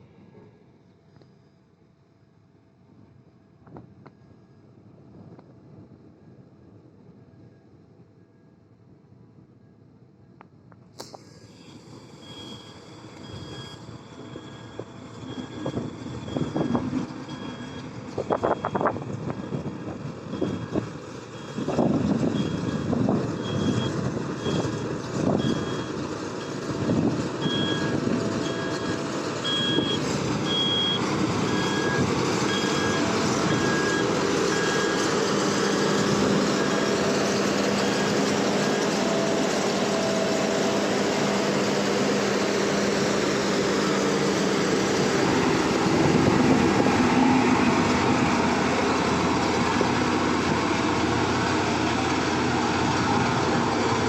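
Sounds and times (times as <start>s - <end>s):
heavy machinery engine running: 11.1s - 54.0s
reversing alarm beeping: 11.3s - 26.7s, 27.4s - 40.7s.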